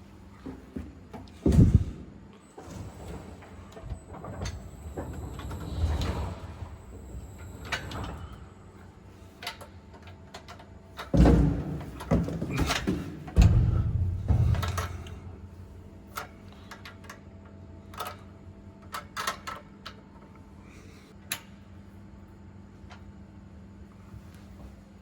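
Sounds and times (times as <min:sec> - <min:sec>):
metal clunks and scrapes: 0:11.1 - 0:15.4
heavy thuds: 0:11.2 - 0:15.4.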